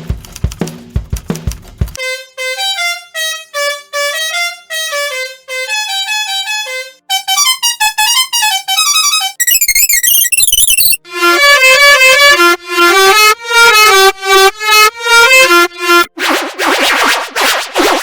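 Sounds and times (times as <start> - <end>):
short electronic tune: 9.4 - 11.3.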